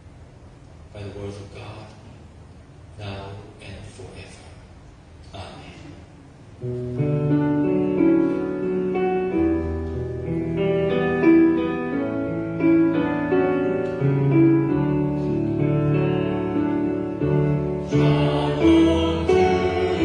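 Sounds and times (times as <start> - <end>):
keyboard playing slow chords: 6.6 - 20.0.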